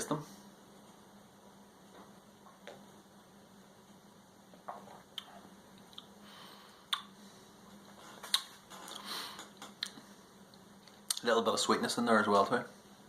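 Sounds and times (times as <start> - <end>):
mouth clicks and lip smacks: 5.1 - 6.2, 6.9 - 7.2, 8.2 - 10.0, 10.8 - 11.2.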